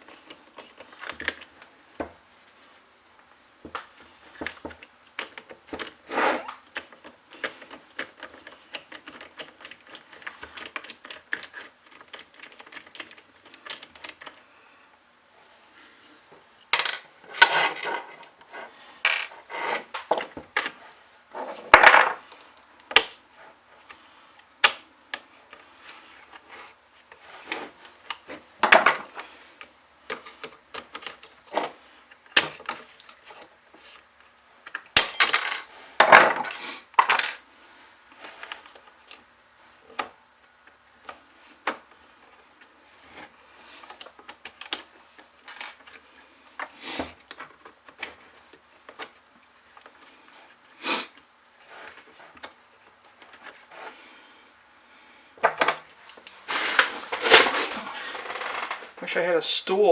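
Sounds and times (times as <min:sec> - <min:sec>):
metal parts clinking and clattering: 0:08.3 - 0:14.2, 0:35.0 - 0:36.2, 0:37.0 - 0:37.4, 0:44.5 - 0:44.9, 0:55.6 - 0:57.9.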